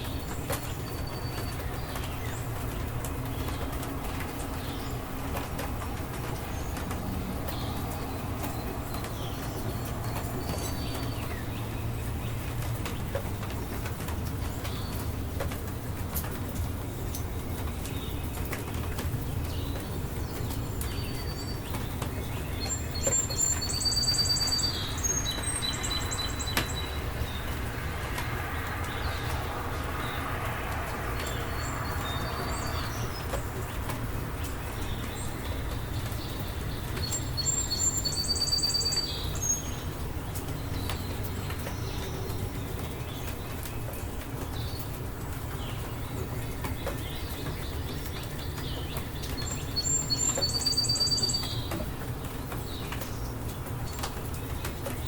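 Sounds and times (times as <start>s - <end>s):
rainstorm: 0.0s - 55.0s
songbird trilling: 22.6s - 27.5s, 36.8s - 39.8s, 49.4s - 51.7s.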